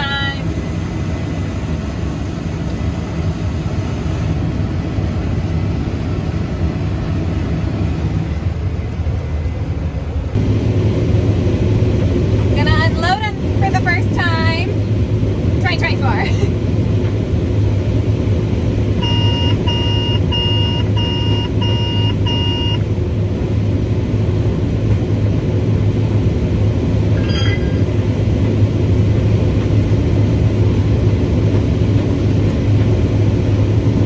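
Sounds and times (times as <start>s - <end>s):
combine harvester drone: 0.0s - 34.0s
cab alarm beeps: 19.0s - 22.8s, 27.2s - 28.0s
short electronic chirp: 27.2s - 27.9s.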